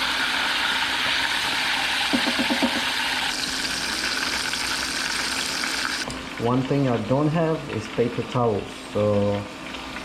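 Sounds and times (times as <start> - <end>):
fish sizzling in hot oil: 0.0 - 6.1.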